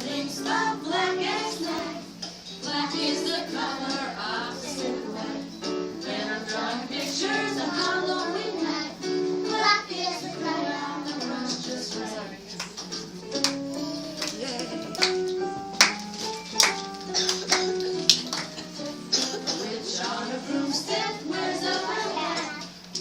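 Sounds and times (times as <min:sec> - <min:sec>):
child singing: 0:00.0 - 0:02.1, 0:02.7 - 0:05.4, 0:06.0 - 0:12.3, 0:19.6 - 0:22.8
music: 0:00.0 - 0:23.0.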